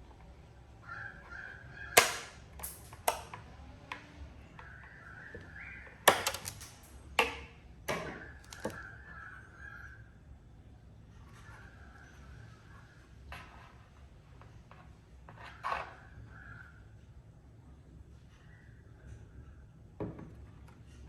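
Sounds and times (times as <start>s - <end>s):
plastic parts clicking and knocking: 2.0s - 3.4s, 6.1s - 8.8s.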